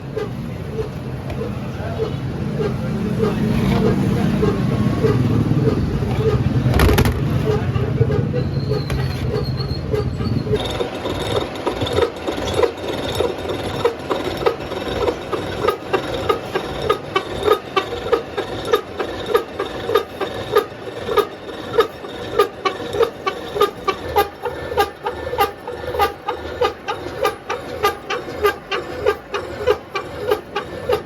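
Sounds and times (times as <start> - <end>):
metalworking machine knocking: 0.0 - 31.0.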